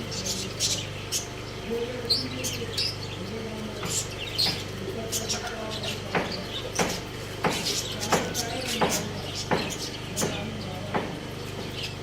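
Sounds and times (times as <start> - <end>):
small birds chirping: 0.0 - 12.0
steady low hum: 0.0 - 12.0
sharp knocks: 6.1 - 11.2.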